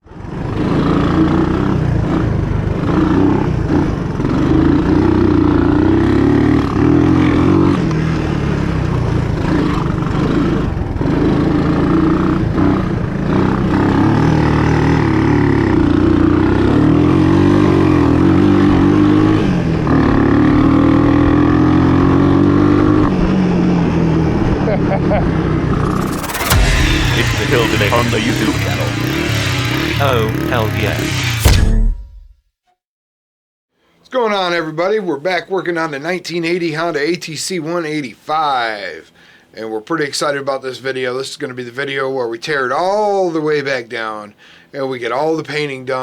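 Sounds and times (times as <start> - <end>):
small off-road engine running: 0.0 - 24.5, 25.2 - 31.9.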